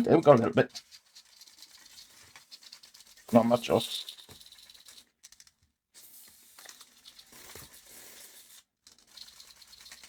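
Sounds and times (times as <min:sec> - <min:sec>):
spray can sputtering: 0:00.8 - 0:05.0.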